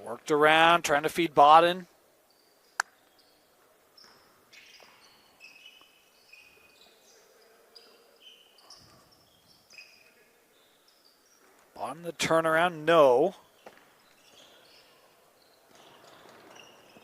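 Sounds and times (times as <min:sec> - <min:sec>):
faint gym noise: 0:00.0 - 0:17.0
shoes squeaking on hardwood floor: 0:02.3 - 0:11.8, 0:13.4 - 0:17.0.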